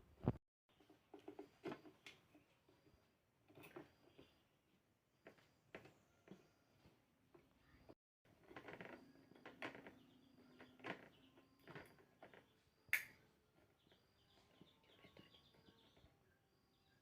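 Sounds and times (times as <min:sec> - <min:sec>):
faint bird chirps: 0:09.0 - 0:17.0.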